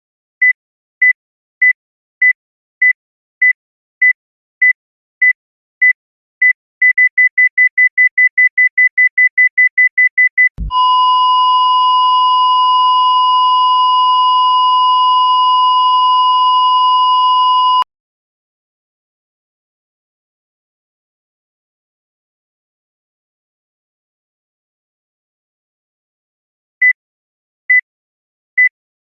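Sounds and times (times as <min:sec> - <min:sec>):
cardiac monitor beeping: 0:10.6 - 0:17.9.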